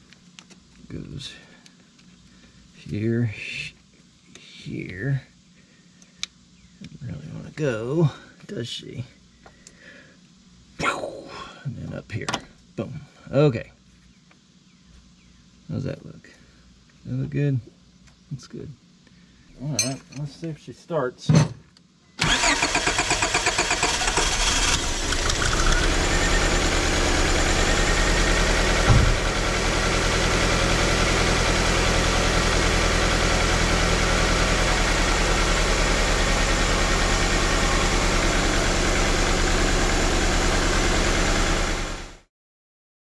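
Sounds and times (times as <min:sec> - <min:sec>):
starter motor cranking: 0:22.2 - 0:27.0
car engine idling: 0:22.3 - 0:42.2
brief thump: 0:28.8 - 0:29.2.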